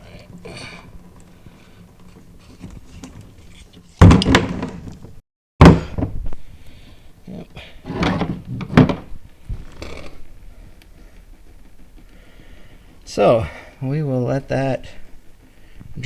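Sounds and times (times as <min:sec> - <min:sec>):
heavy clunks of tools and parts: 0:02.1 - 0:06.4, 0:07.9 - 0:09.2.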